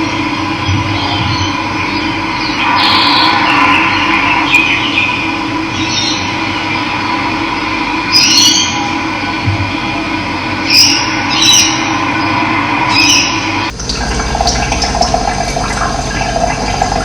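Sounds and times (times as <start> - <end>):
birds calling: 0.0 - 6.8, 10.6 - 13.7
running water rushing: 2.6 - 6.5.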